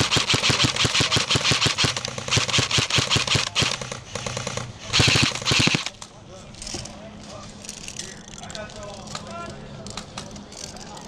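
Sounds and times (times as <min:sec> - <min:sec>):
airsoft guns firing bursts: 0:00.0 - 0:06.0.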